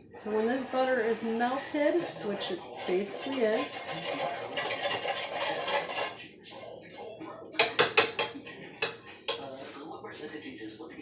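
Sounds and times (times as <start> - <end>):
utensils clinking against dishes: 1.7 - 7.0, 7.6 - 10.3.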